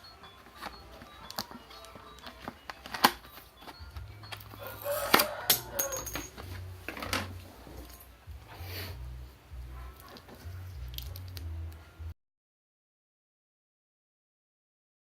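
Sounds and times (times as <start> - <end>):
faint background music: 0.0 - 12.2
clicks and knocks of handling: 0.3 - 8.0.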